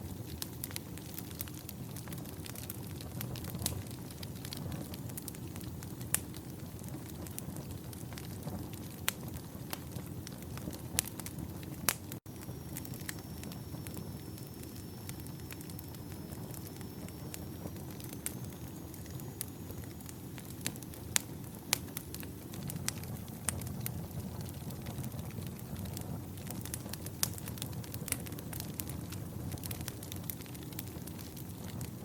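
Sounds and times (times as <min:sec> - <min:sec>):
campfire flames rumbling: 0:00.0 - 0:32.0
logs crackling and popping: 0:00.1 - 0:32.0
faint high whistle: 0:12.3 - 0:20.7.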